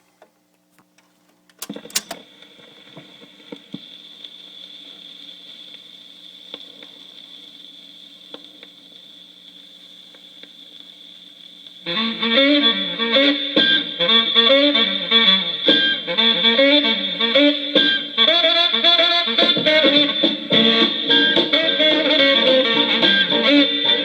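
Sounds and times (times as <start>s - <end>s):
vinyl ticks and crackles: 0.0s - 11.9s
vinyl groove hiss: 0.0s - 24.0s
stylus clicks on vinyl: 0.1s - 2.5s.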